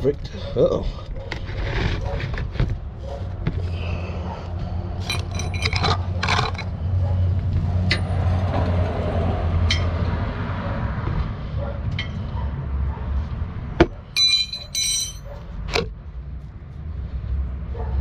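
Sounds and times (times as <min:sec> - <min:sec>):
metal tools clinking and scraping: 0:05.0 - 0:06.7, 0:09.7 - 0:09.9, 0:12.0 - 0:12.2, 0:14.2 - 0:15.4.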